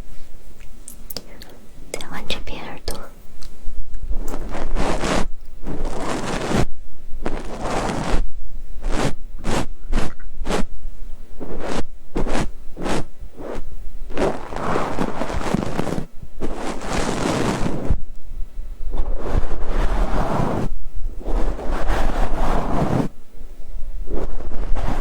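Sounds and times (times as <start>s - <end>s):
ear pick scraping microphone: 4.0s - 10.8s, 11.4s - 18.0s, 18.9s - 23.2s, 24.1s - 25.0s.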